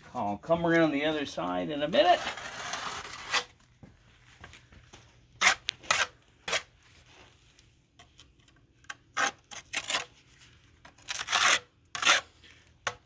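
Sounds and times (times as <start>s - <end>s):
masonry tool scraping mortar: 1.9s - 3.6s, 5.4s - 6.9s, 9.1s - 13.0s.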